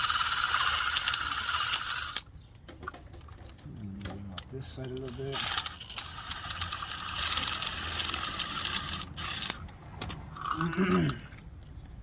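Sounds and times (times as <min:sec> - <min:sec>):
drill grating chatter: 0:00.0 - 0:02.2, 0:05.0 - 0:09.6
short pitched vocal sound: 0:10.5 - 0:11.4.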